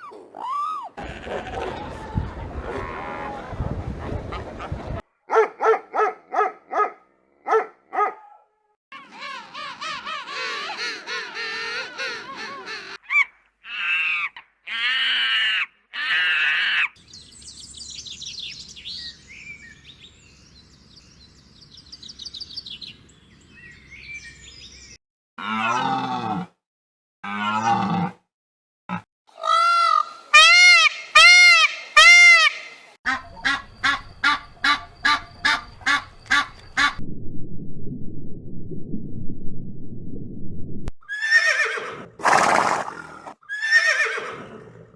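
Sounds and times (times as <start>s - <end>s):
bird and fowl calls: 29.4s - 37.0s
rapid honking calls: 30.4s - 37.0s.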